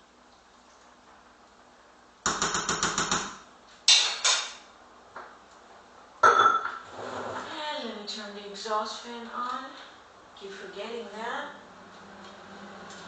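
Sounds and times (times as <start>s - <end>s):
cookware knocks: 6.2s - 6.8s.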